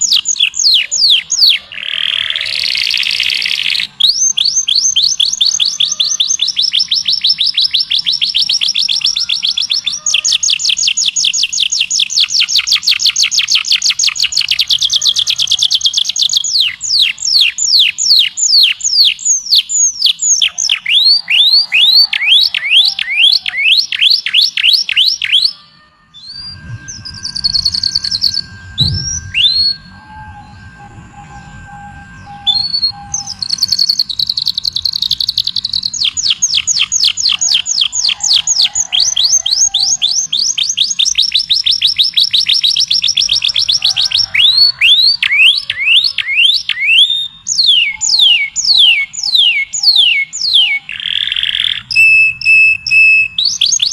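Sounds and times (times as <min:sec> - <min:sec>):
songbird singing: 0:00.0 - 0:53.9
steady high tone: 0:25.3 - 0:38.1
low hum: 0:26.1 - 0:36.2.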